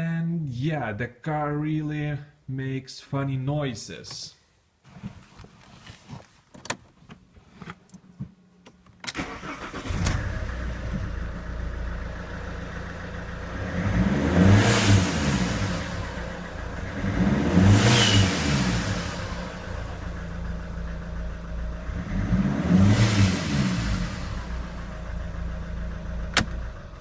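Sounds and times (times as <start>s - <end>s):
engine starter clicks: 9.0s - 10.4s, 26.3s - 26.6s
diesel engine idling and revving: 9.2s - 27.0s.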